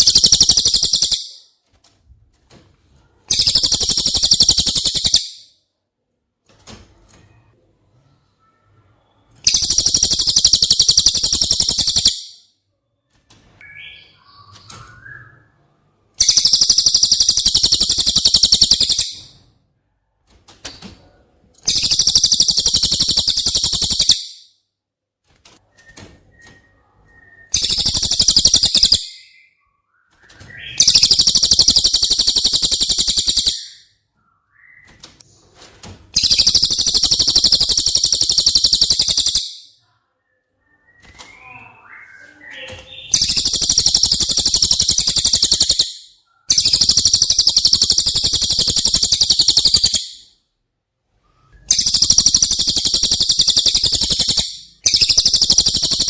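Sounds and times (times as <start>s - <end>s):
bird high rapid trills: 0.0s - 1.3s, 9.5s - 12.1s, 16.2s - 19.0s, 27.6s - 29.0s, 30.8s - 33.8s, 36.2s - 39.5s, 43.1s - 45.9s, 46.5s - 50.1s, 51.7s - 56.0s.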